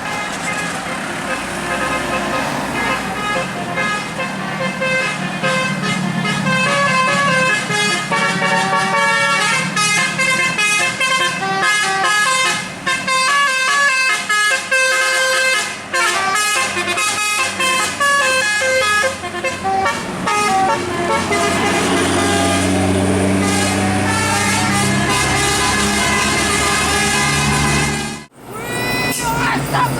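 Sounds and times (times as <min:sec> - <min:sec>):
bus air horn melody: 0:00.0 - 0:28.3.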